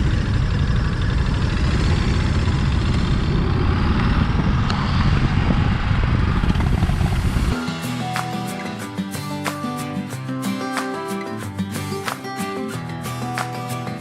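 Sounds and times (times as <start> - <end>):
heavy wind rumble: 0.0 - 7.6
motorcycle engine running: 0.0 - 9.5.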